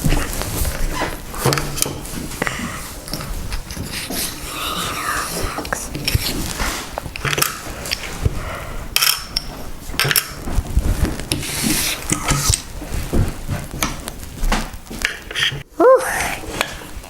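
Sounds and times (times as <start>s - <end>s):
rustling: 0.0s - 8.7s, 9.4s - 15.6s
objects handled clicking: 5.4s - 8.4s, 9.0s - 12.8s.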